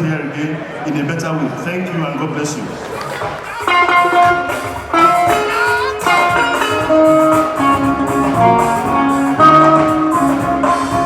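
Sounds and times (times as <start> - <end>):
live band with guitar: 2.8 - 11.0.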